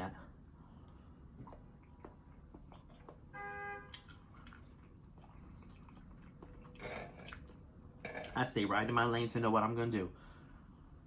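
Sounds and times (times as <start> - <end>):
person chewing food: 0.5 - 8.4.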